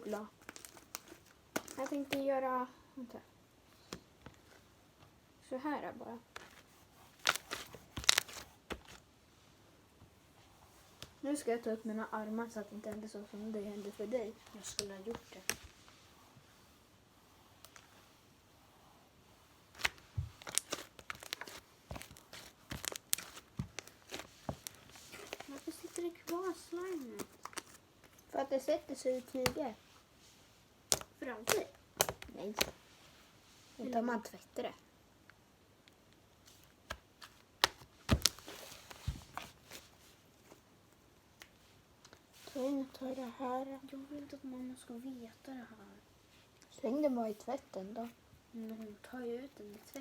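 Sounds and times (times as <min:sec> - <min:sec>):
rustling: 0:00.0 - 0:02.2, 0:06.2 - 0:34.0, 0:36.3 - 0:43.4
slime crackling and popping: 0:19.8 - 0:27.7, 0:30.9 - 0:32.3, 0:37.6 - 0:38.5.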